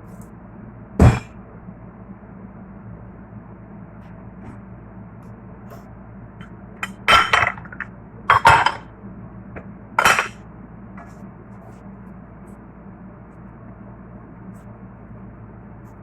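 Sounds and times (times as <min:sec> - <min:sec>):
utensil clattering against cookware: 0:06.8 - 0:08.8, 0:10.0 - 0:10.4.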